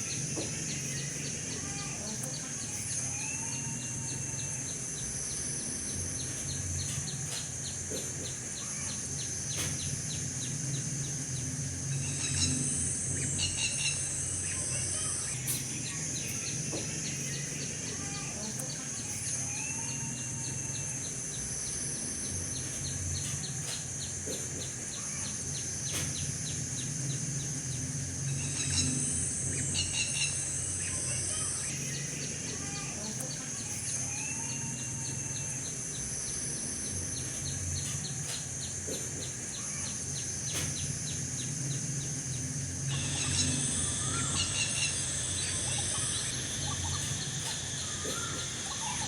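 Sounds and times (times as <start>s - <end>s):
high insect drone: 0.0s - 49.0s
bird chirps: 12.0s - 49.0s.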